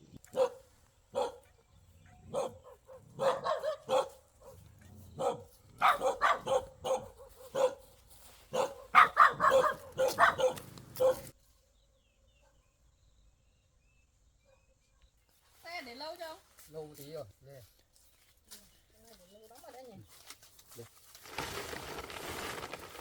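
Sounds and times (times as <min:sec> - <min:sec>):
dog barking: 0:00.2 - 0:07.9, 0:08.5 - 0:11.3, 0:14.4 - 0:15.1.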